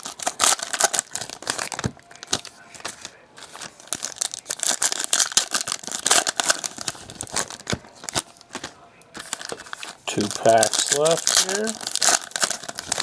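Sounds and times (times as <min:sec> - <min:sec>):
plastic wrappers tearing and crinkling: 0:00.0 - 0:13.0.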